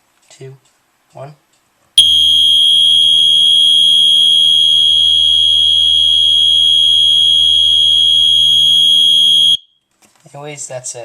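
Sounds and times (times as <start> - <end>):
steady high-pitched horn tone: 2.0 - 9.6.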